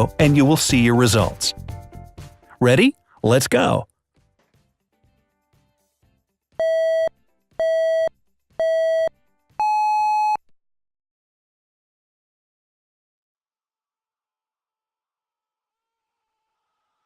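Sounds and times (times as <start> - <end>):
electronic countdown beeps: 6.6 - 10.4.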